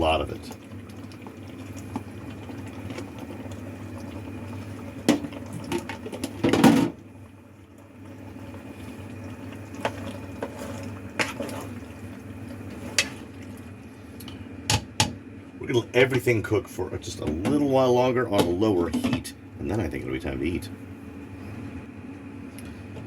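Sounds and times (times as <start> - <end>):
sauce simmering and bubbling: 0.0 - 14.6.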